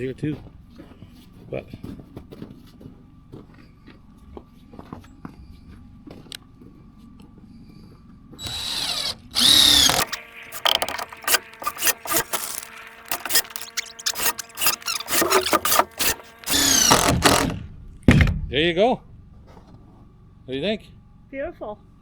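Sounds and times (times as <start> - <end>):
power drill driving screws: 8.4 - 17.8
knocks: 15.0 - 18.7.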